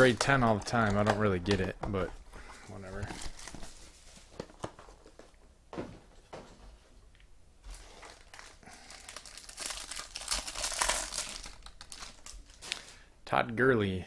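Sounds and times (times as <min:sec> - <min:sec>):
plastic wrapper tearing and crinkling: 0:00.0 - 0:01.8, 0:02.9 - 0:04.0, 0:07.7 - 0:13.0.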